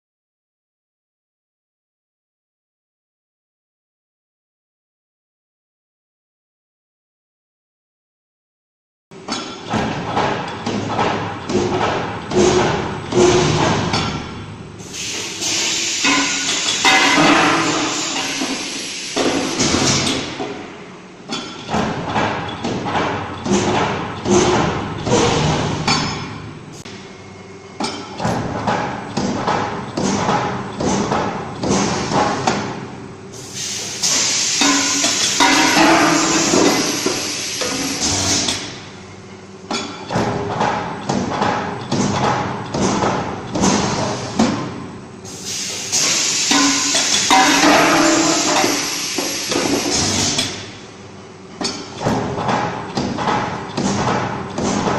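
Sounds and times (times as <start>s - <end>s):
press metal knocks and clanks: 9.2s - 18.6s, 19.2s - 27.1s, 27.8s - 33.0s, 34.6s - 39.0s, 39.6s - 45.0s, 46.0s - 54.9s.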